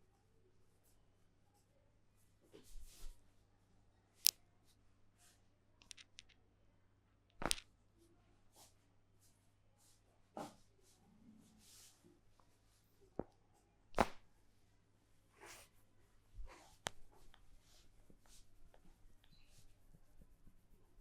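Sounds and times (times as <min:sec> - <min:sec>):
hands clicking on head: 0:05.8 - 0:06.4, 0:07.4 - 0:07.6
hands slapping on head: 0:07.4 - 0:07.7, 0:14.0 - 0:14.2.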